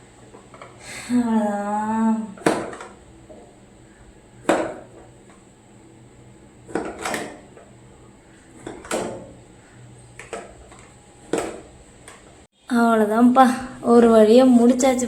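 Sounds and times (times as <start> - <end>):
hard objects knocking and clunking: 2.4 - 3.6, 4.4 - 5.4, 6.6 - 7.7, 8.6 - 9.4, 10.2 - 12.3.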